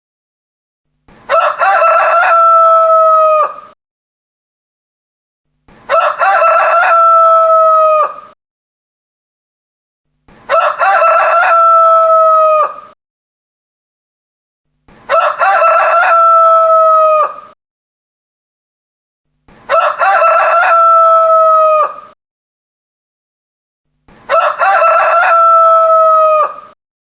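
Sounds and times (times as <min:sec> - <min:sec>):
rooster crowing: 0:01.3 - 0:03.8, 0:05.9 - 0:08.4, 0:10.5 - 0:13.0, 0:15.1 - 0:17.6, 0:19.7 - 0:22.2, 0:24.3 - 0:26.8.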